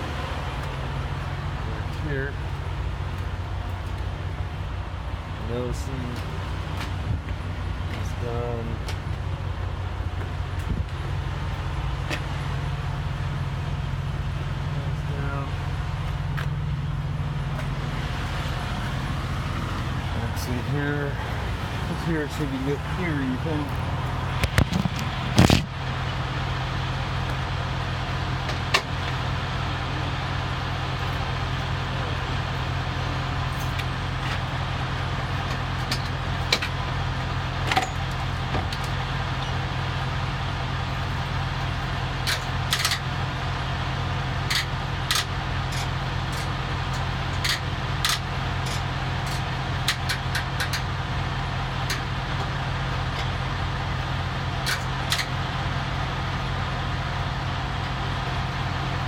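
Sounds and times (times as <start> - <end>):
engine humming: 0.0 - 59.0
ignition key and solenoid clicks: 54.6 - 55.3.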